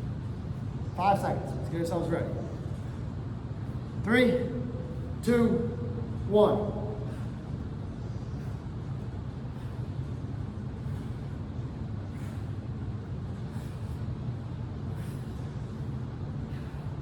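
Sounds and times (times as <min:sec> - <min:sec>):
steady low hum: 0:00.0 - 0:17.0
breathy exhales: 0:12.0 - 0:14.3, 0:14.9 - 0:17.0.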